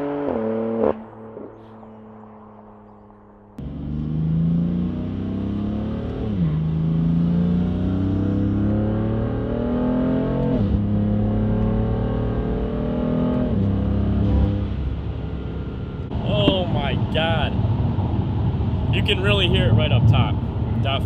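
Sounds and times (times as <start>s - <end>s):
car engine accelerating hard: 0.0s - 21.0s.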